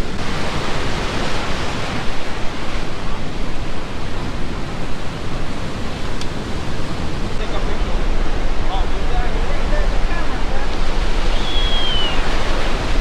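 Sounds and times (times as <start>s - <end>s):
rough surf: 0.0s - 13.0s
wind buffeting microphone: 0.0s - 13.0s
wind rushing: 4.7s - 13.0s.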